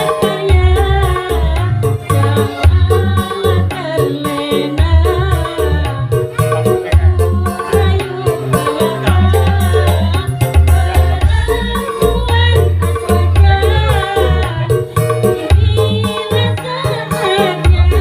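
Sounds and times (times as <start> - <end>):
low drums beating: 0.0 - 18.0
women's choir singing: 13.0 - 18.0.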